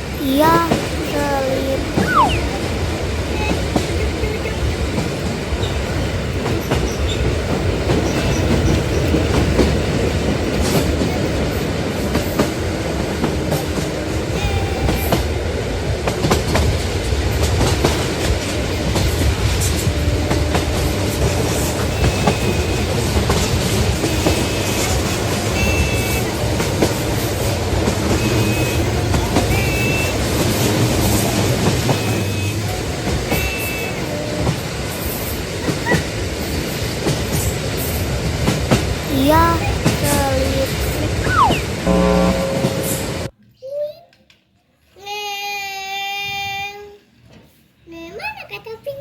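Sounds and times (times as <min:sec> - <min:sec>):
high squeaks: 0:01.9 - 0:02.8.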